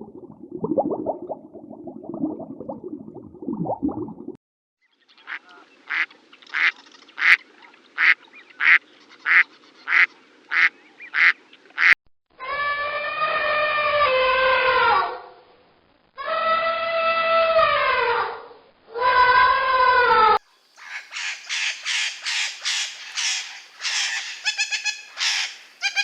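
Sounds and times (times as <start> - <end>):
duck quacking: 5.3 - 7.4, 8.0 - 12.0.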